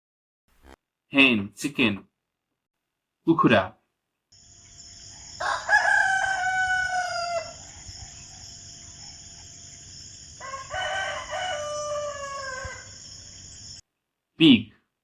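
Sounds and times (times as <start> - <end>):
steady high-pitched hiss: 4.4 - 6.5
rooster crowing: 5.0 - 8.6, 9.9 - 13.8.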